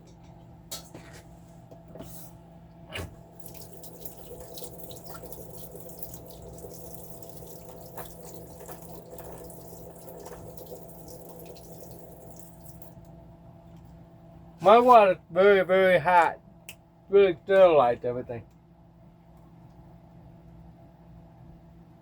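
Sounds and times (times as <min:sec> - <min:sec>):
tap running into sink: 0:03.0 - 0:12.9.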